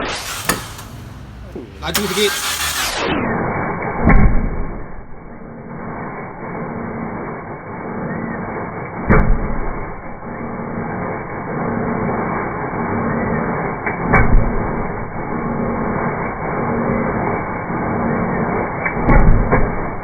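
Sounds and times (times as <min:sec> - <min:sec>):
moving vehicle rumbling: 0:00.0 - 0:03.4.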